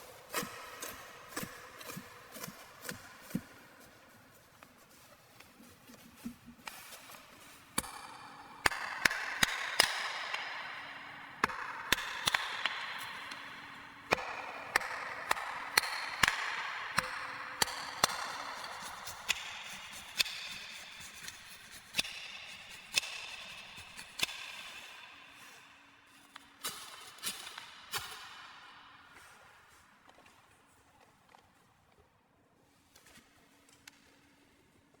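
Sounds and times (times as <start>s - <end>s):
sharp irregular tool knocks: 11.4s - 21.3s, 21.9s - 24.6s.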